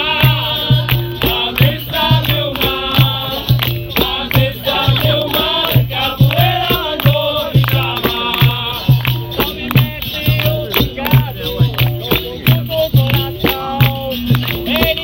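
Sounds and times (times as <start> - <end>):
group singing: 0.0 - 15.0
sharp percussion strikes: 0.0 - 15.0
tambourine jingling: 0.0 - 15.0.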